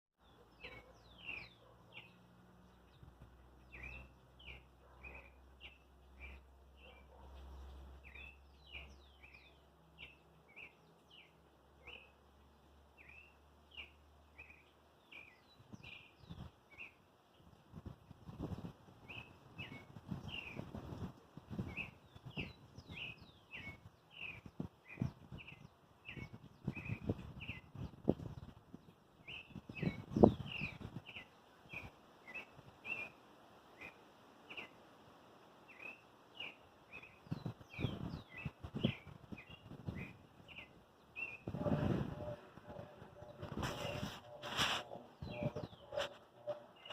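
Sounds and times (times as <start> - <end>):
thrush singing quick chirps: 35.7 - 46.9.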